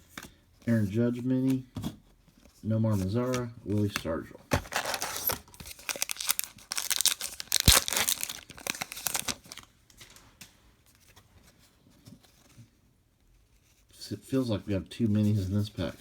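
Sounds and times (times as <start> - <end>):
wrapper tearing and crinkling: 4.6 - 9.7.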